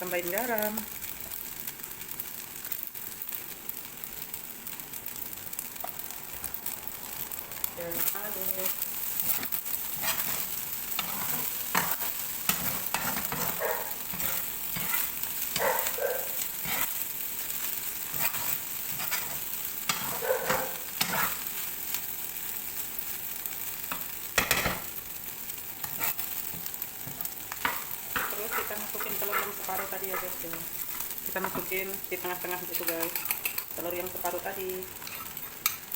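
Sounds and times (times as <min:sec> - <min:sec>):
rice sizzling in a pan: 0:00.0 - 0:35.9
utensil scraping and knocking pan: 0:27.1 - 0:30.6.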